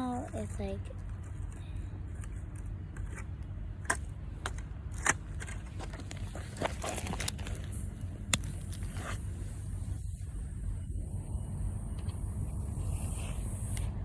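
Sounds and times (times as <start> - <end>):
low steady rumble: 0.0 - 14.0
twigs snapping: 6.1 - 8.9.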